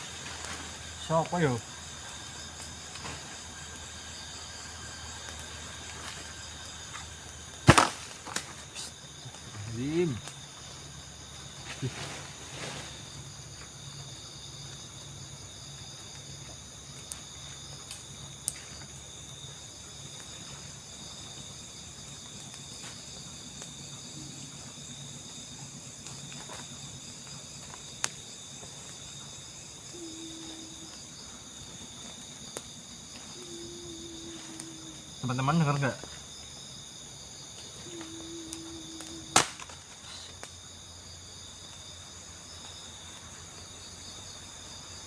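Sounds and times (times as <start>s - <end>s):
crickets trilling: 0.0s - 45.0s.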